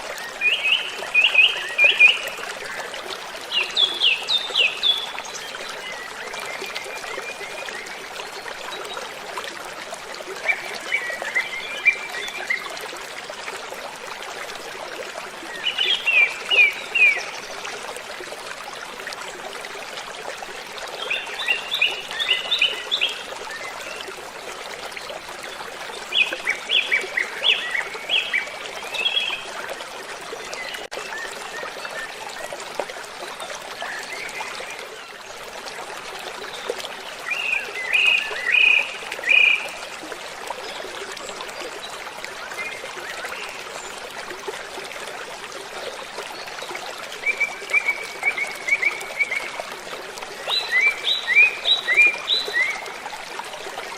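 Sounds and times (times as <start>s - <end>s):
water rushing: 0.0s - 53.9s.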